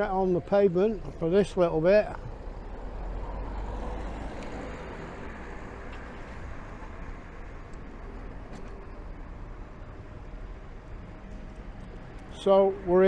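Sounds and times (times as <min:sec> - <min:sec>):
road traffic noise: 0:00.0 - 0:13.0
vehicle passing: 0:02.1 - 0:11.2.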